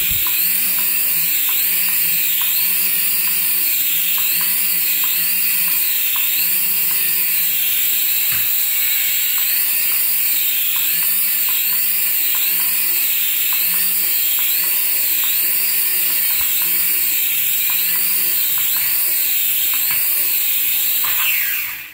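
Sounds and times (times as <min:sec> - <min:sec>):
toy electronic whine warbling: 0:00.0 - 0:21.9.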